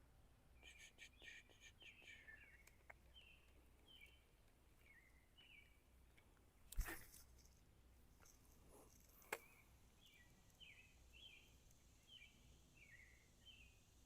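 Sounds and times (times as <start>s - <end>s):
faint bird chirps: 0.5s - 5.8s, 8.8s - 13.9s.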